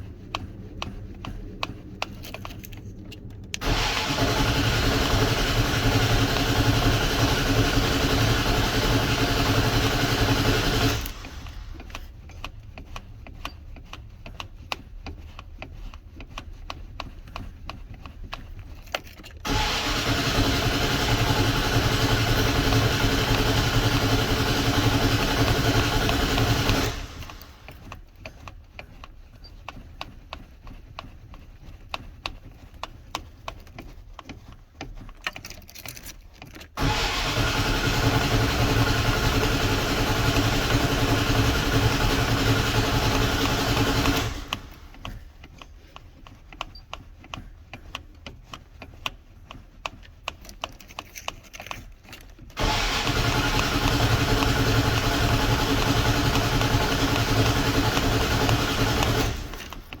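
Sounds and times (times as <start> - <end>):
engine starter cranking: 2.0 - 12.1, 19.4 - 27.9, 35.2 - 45.2, 52.5 - 60.0
steady regular ticking: 3.3 - 18.6, 20.0 - 35.0, 52.6 - 60.0.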